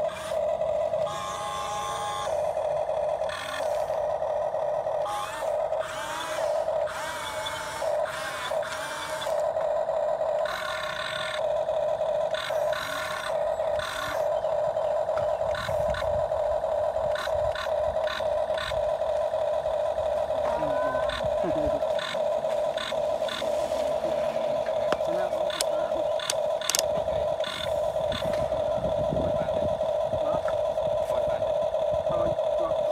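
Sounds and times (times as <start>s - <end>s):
small motor whining: 0.0s - 32.9s
sharp clicks: 24.9s - 28.4s.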